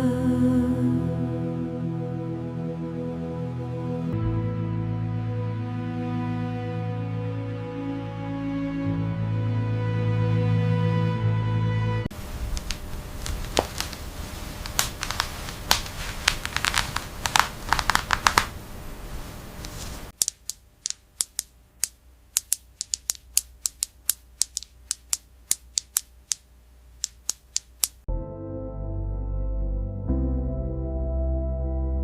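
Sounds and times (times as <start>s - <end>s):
steady hiss: 12.2s - 28.0s
sharp irregular clicks: 20.1s - 28.1s.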